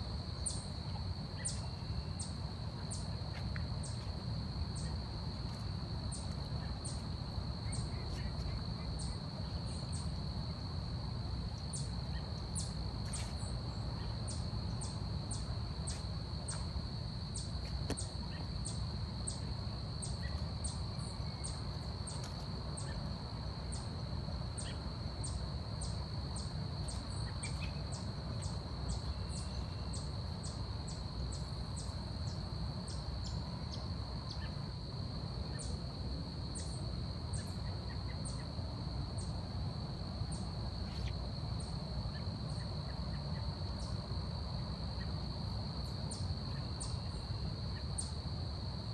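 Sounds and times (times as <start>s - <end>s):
high-pitched insect trill: 0.0s - 39.4s, 40.0s - 48.9s.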